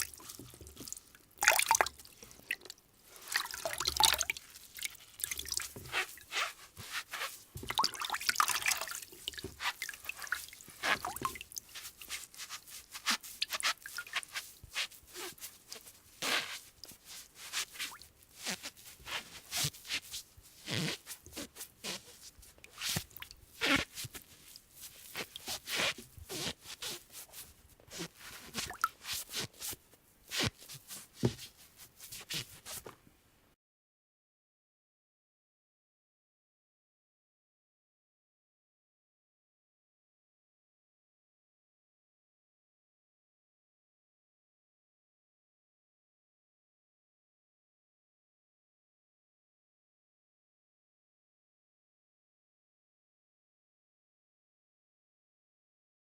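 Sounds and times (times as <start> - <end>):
water splashing: 0.0 - 6.2, 7.6 - 11.6.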